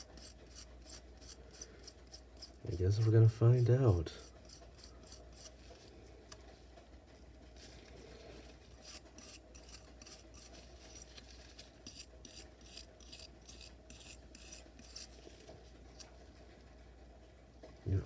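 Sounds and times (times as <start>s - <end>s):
brush scrubbing metal blade: 0.0s - 6.4s, 8.4s - 16.1s.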